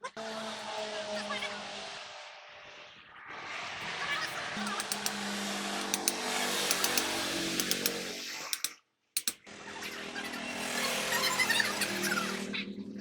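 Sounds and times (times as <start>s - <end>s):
small motor buzzing: 0.0s - 13.0s
scattered clicks: 4.6s - 9.5s.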